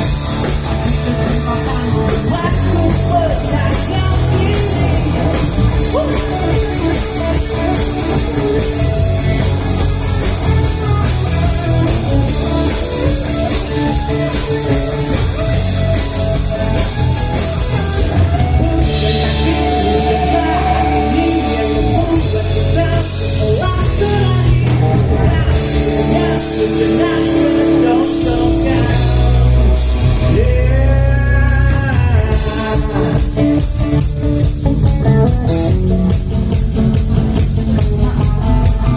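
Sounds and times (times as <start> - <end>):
person singing: 0.0 - 9.0, 18.6 - 33.7
electric guitar: 0.0 - 38.9
live rock band playing: 0.0 - 38.9.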